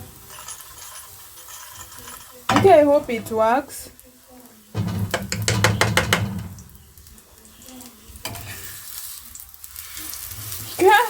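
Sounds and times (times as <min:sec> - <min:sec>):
batter sizzling in a frying pan: 0:00.0 - 0:11.0
sharp knock against pan: 0:04.8 - 0:06.5
spatula scraping: 0:08.2 - 0:09.2.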